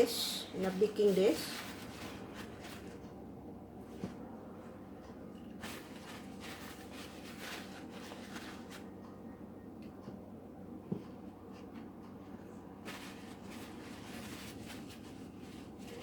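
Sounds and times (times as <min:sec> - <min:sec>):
rustling and scraping of chicken: 0:00.0 - 0:03.1, 0:05.5 - 0:09.0, 0:12.7 - 0:16.0.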